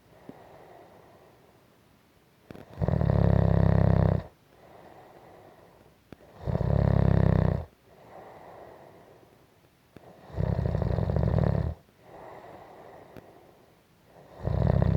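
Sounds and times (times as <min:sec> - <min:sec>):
soft breathing: 0:00.0 - 0:01.6, 0:04.5 - 0:06.4, 0:07.8 - 0:10.3, 0:12.0 - 0:14.4
loud fluttering snores: 0:02.7 - 0:04.3, 0:06.3 - 0:07.7, 0:10.1 - 0:11.8, 0:14.2 - 0:14.9.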